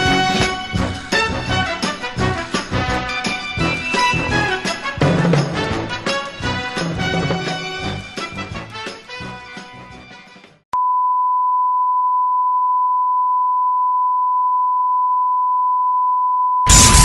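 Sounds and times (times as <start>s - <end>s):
music: 0.0s - 10.6s
loud burst of noise: 16.7s - 17.0s.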